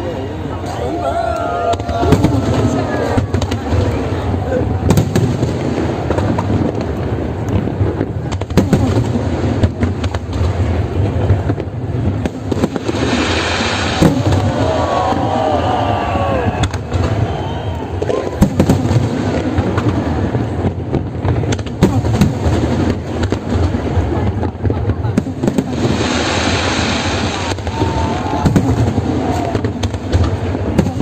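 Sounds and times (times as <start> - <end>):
fireworks cracking and crackling: 0.0 - 31.0
fireworks booming: 1.6 - 31.0
rushing hiss: 12.8 - 14.4.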